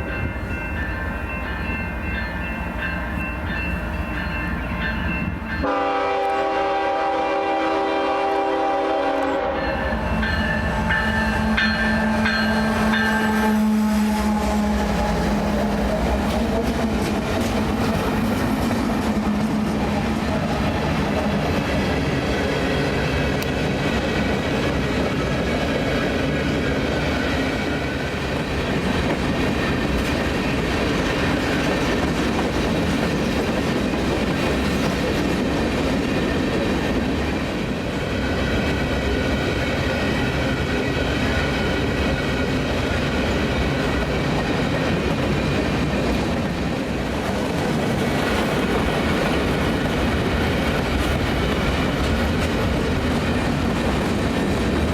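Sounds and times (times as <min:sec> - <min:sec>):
freight train rumbling past: 0:00.0 - 0:54.9
steel wheels clattering on rails: 0:14.8 - 0:54.9.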